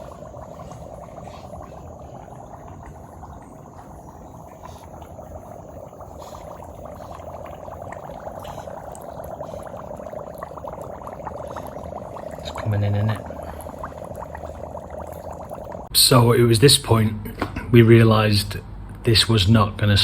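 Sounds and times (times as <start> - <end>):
floodwater bubbling and crackling: 0.0 - 15.9.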